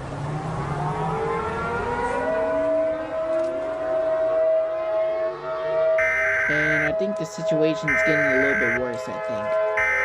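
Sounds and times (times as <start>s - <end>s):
civil defense siren wailing: 0.0s - 10.0s.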